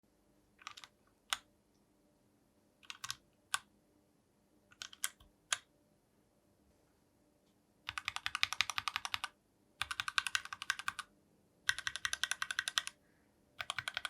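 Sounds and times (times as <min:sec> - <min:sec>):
mechanical keyboard typing: 0:00.6 - 0:01.5, 0:02.8 - 0:03.7, 0:04.7 - 0:05.7, 0:07.9 - 0:11.1, 0:11.7 - 0:13.0, 0:13.6 - 0:14.0.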